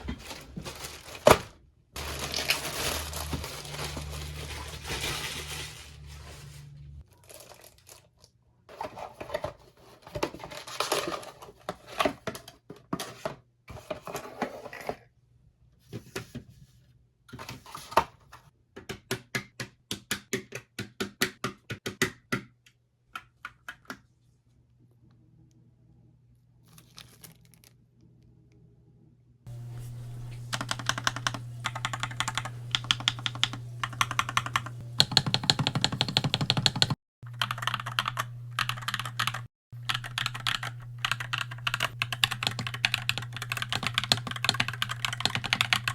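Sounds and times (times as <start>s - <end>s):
crinkling rustling: 0.0s - 12.2s, 26.6s - 27.8s
mechanical keyboard clacking: 30.5s - 45.9s.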